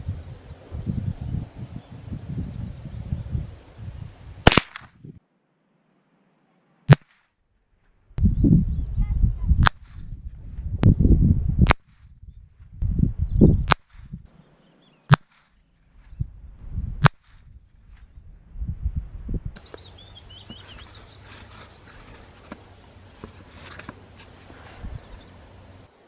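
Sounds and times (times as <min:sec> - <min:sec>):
low rumbling noise: 0:00.0 - 0:05.2
rifle shots: 0:04.4 - 0:04.9.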